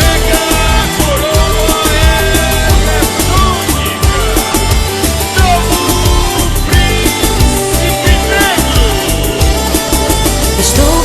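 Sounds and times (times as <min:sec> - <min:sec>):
live band instrumental music: 0:00.0 - 0:11.0.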